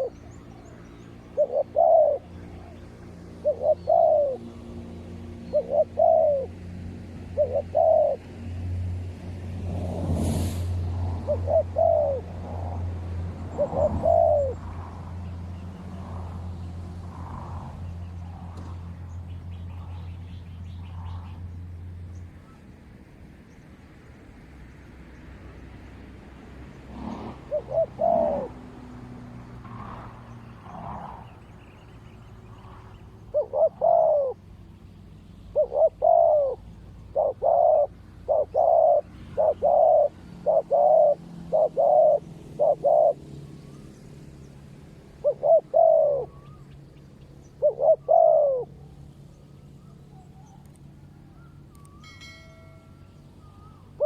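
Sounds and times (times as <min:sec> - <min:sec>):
doves cooing: 0:00.0 - 0:08.8, 0:10.9 - 0:20.1, 0:26.5 - 0:34.8, 0:35.5 - 0:43.6, 0:44.8 - 0:46.8, 0:47.4 - 0:52.8
low engine hum: 0:00.0 - 0:54.0.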